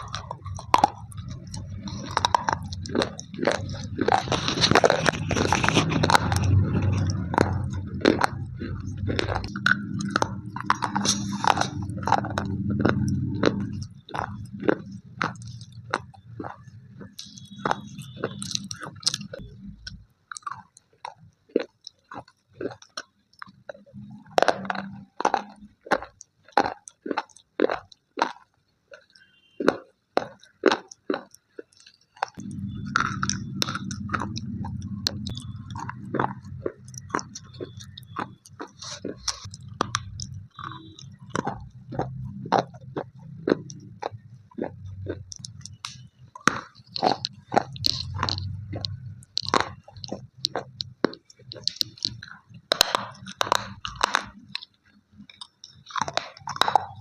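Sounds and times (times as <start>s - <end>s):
low steady hum: 0.0s - 20.4s, 32.3s - 57.0s
dry crunches of chewing: 0.0s - 57.0s.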